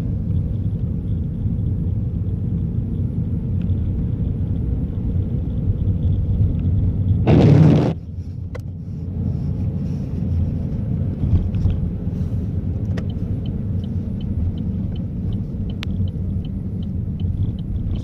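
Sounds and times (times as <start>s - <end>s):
car engine and tyres rumbling: 0.0s - 18.0s
loud rush of noise: 7.2s - 8.0s
faint regular ticking: 12.8s - 18.0s.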